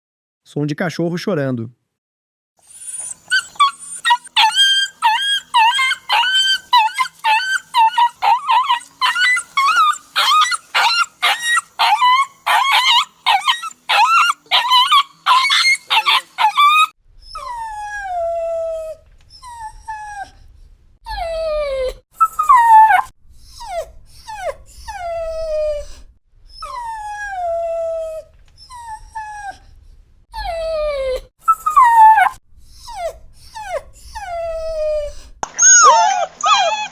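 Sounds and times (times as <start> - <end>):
dog whimpering: 2.7 - 20.4, 21.1 - 29.7, 30.4 - 36.9
dog yelping and crying: 2.7 - 20.4, 21.1 - 26.0, 26.6 - 29.6, 30.4 - 36.9
low rumble: 17.0 - 21.8, 32.4 - 35.4.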